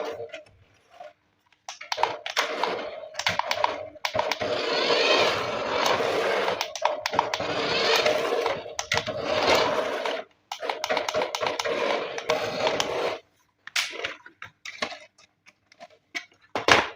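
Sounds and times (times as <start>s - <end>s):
toy electric motor whirring: 2.3s - 13.2s.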